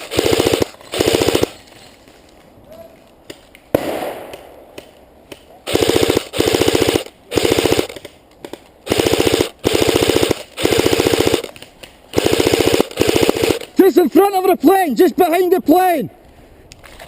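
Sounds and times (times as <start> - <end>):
airsoft rifle firing bursts: 0.0 - 1.6, 5.7 - 8.2, 8.8 - 13.8.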